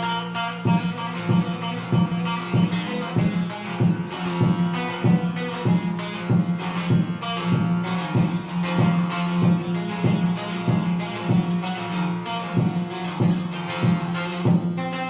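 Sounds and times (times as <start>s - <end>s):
plucked long-necked lute melody: 0.0s - 15.0s.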